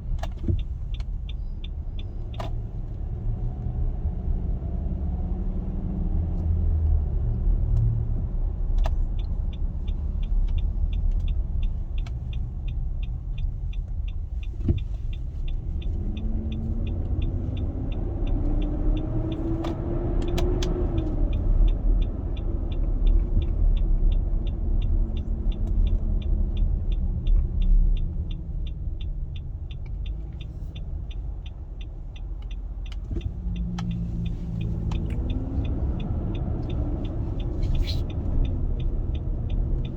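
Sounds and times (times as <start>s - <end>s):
light regular ticking: 0.0s - 4.5s, 8.4s - 39.9s
car engine rumbling and revving: 0.0s - 39.9s.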